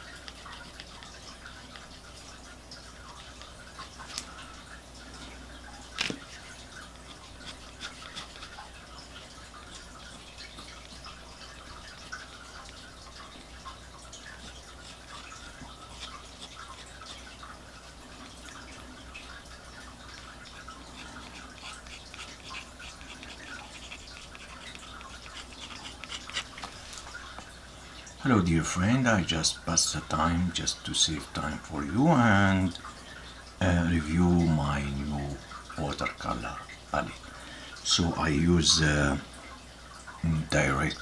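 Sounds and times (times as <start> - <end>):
faint steady hum: 0.0 - 41.0
pen nib scratching paper: 21.0 - 27.2.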